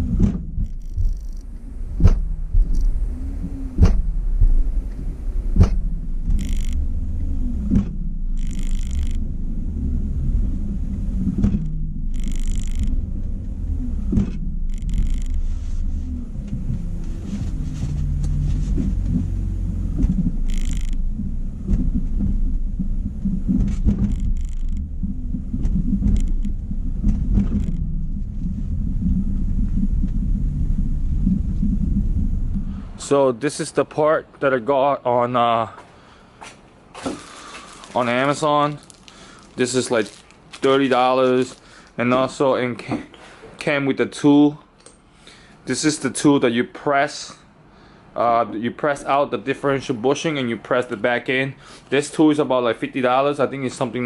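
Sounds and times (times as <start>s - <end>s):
sharp knocks: 0.0s - 1.4s, 2.0s - 3.0s, 3.8s - 4.6s, 5.6s - 6.8s, 7.6s - 9.2s, 11.3s - 13.0s, 19.9s - 27.9s
low rumble: 0.0s - 33.3s.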